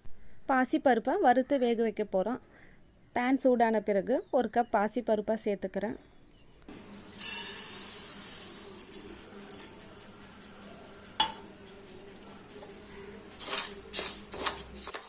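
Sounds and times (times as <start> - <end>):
dry lentils poured into pan: 7.2 - 9.6.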